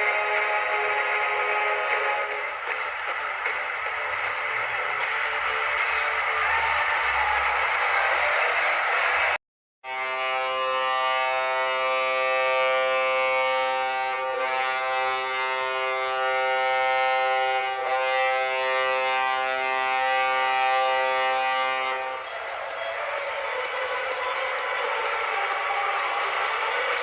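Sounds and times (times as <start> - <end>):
goal horn blast: 0.0 - 2.9, 9.9 - 22.3.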